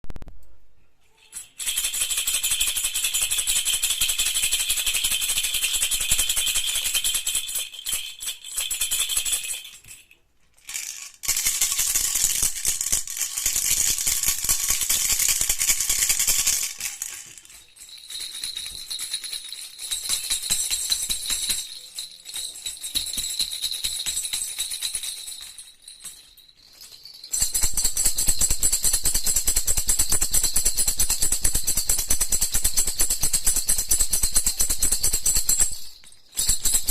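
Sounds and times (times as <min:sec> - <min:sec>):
toy baby rattles shaken: 0:01.1 - 0:36.9.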